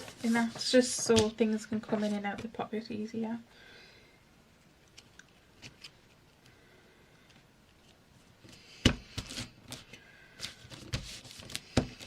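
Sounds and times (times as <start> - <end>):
paper and tape crinkling: 0.0 - 2.5, 9.2 - 12.0.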